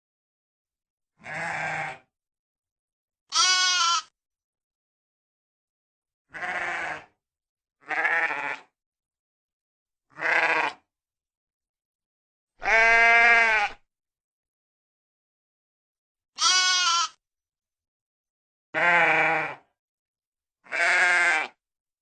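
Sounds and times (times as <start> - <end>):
sheep bleating: 1.2 - 2.1, 3.3 - 4.2, 6.3 - 7.2, 7.8 - 8.7, 10.1 - 10.8, 12.6 - 13.8, 16.4 - 17.2, 18.7 - 19.7, 20.6 - 21.6.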